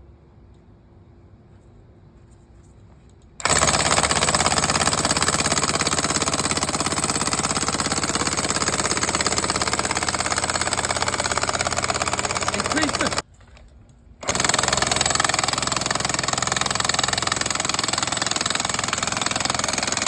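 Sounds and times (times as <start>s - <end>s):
impact wrench hammering: 3.4s - 13.2s.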